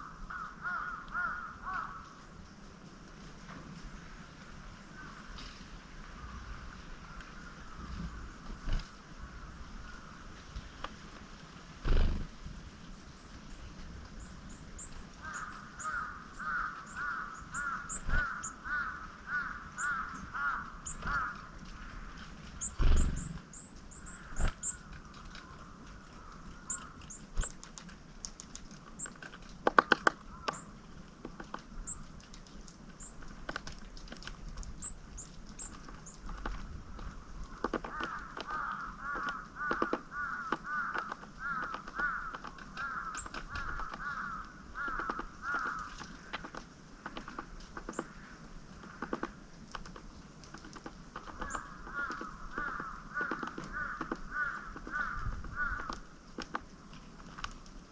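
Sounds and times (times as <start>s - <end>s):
crow cawing: 0.0s - 2.2s, 15.2s - 22.1s, 24.2s - 27.1s, 30.2s - 30.7s, 37.1s - 46.5s, 51.2s - 56.1s
small songbirds chirping: 11.8s - 57.9s
sharp clicks: 26.7s - 48.1s, 48.8s - 55.1s.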